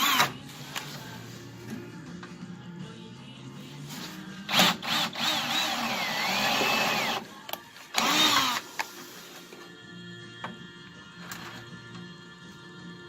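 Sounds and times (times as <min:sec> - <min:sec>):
power drill boring sheet metal: 0:04.5 - 0:07.3, 0:07.9 - 0:09.2.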